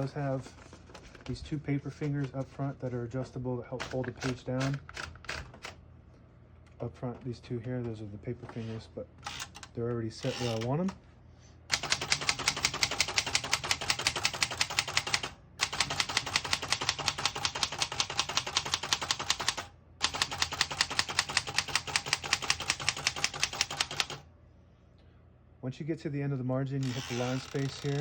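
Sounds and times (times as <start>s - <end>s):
typewriter typing: 3.8s - 5.8s, 11.7s - 24.2s, 26.8s - 28.0s.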